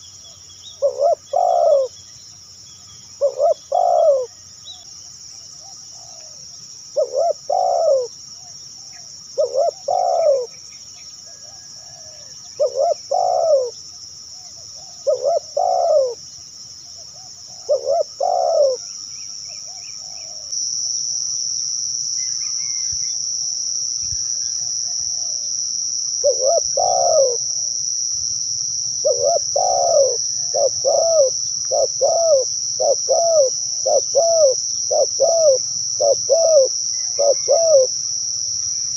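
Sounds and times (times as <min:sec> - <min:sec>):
high insect drone: 0:00.0 - 0:38.9
dove cooing: 0:00.8 - 0:01.9, 0:03.2 - 0:04.4, 0:05.6 - 0:06.4, 0:07.0 - 0:08.1, 0:08.8 - 0:10.5, 0:11.3 - 0:13.8, 0:14.4 - 0:16.2, 0:17.0 - 0:18.9, 0:26.2 - 0:27.4, 0:29.0 - 0:38.0.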